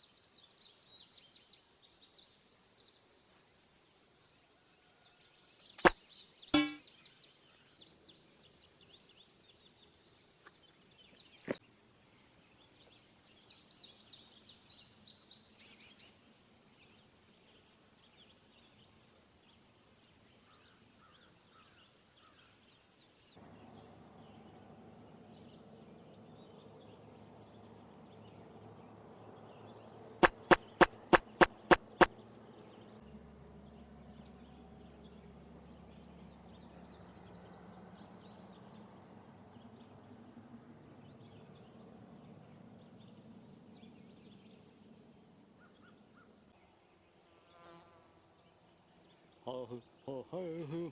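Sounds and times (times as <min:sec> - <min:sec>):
bird chirps: 0:05.7 - 0:09.6, 0:12.8 - 0:16.2, 0:23.1 - 0:38.9
sharp clicks: 0:30.2 - 0:32.2.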